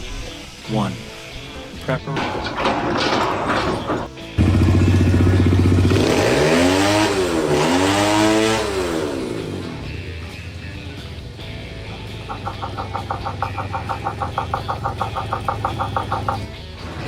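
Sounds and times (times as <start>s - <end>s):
engine running and revving: 4.4s - 17.0s.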